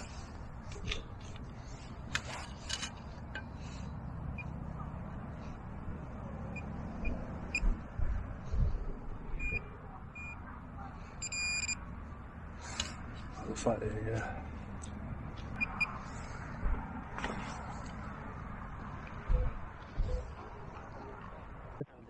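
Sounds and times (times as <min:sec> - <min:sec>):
wind rumble on microphone: 0:06.9 - 0:09.7, 0:16.4 - 0:21.8
metal detector beeps: 0:09.4 - 0:10.4, 0:11.2 - 0:11.8, 0:15.6 - 0:15.9.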